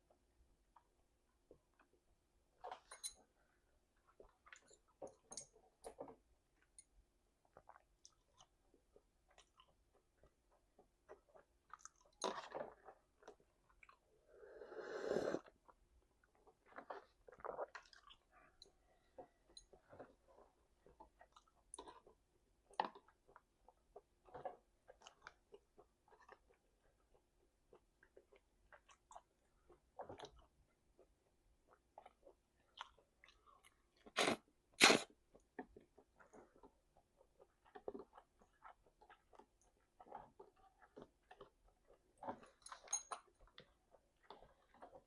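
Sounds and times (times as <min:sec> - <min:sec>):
person chewing and biting food: 0:32.8 - 0:35.1.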